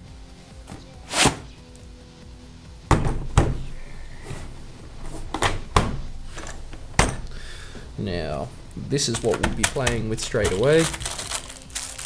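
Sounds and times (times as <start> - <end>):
faint background music: 0.0 - 12.0.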